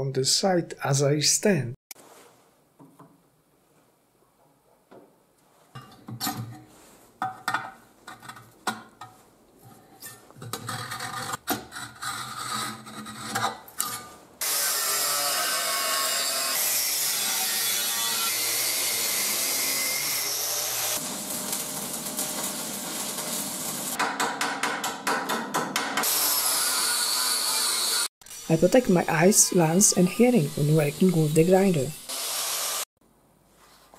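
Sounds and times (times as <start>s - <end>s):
knocks and scrapes of handling: 2.0s - 14.3s
angle grinder grinding: 14.4s - 24.0s, 26.0s - 32.9s.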